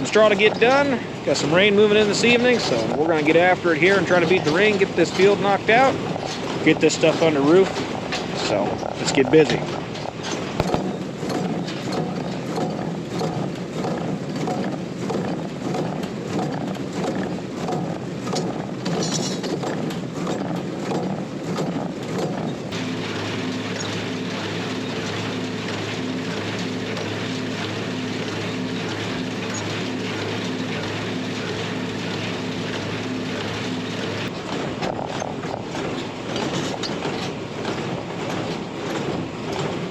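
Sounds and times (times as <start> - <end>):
baler mechanism stroking: 0.0 - 39.2
tractor engine drone: 0.0 - 39.9.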